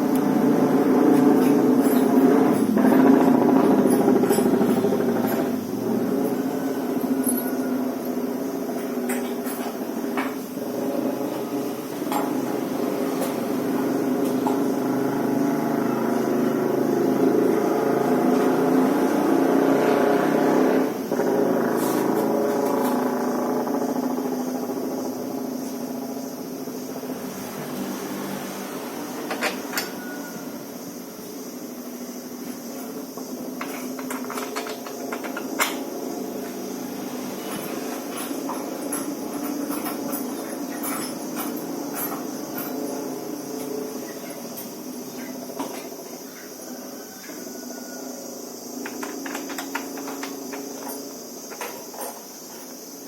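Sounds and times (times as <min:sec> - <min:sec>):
tools clicking and knocking: 0:08.8 - 0:10.5, 0:29.3 - 0:30.1, 0:33.2 - 0:35.9, 0:37.5 - 0:43.7, 0:48.8 - 0:52.8.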